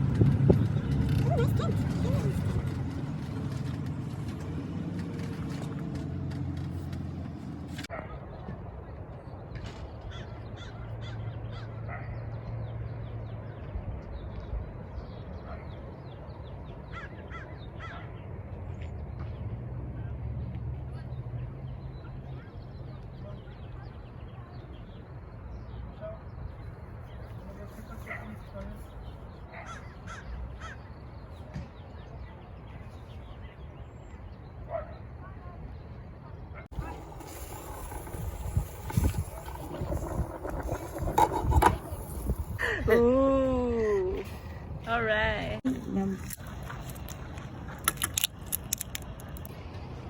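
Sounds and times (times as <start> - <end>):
low rumble: 0.0 - 7.9, 36.7 - 47.8
birds calling: 25.6 - 32.2.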